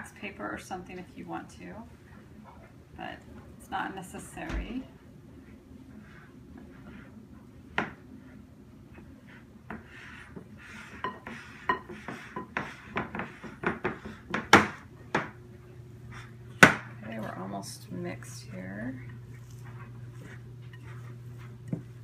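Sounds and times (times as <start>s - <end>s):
spoon scraping thick batter in bowl: 19.0s - 22.0s.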